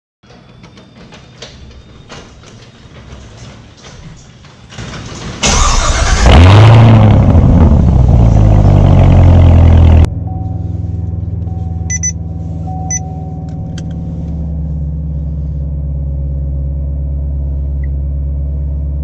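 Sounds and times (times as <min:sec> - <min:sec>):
car engine starting and idling: 0:04.6 - 0:19.0.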